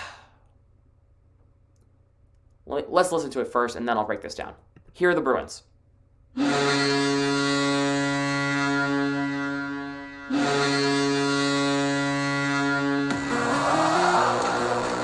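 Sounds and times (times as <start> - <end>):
goal horn blasts: 6.4 - 15.0.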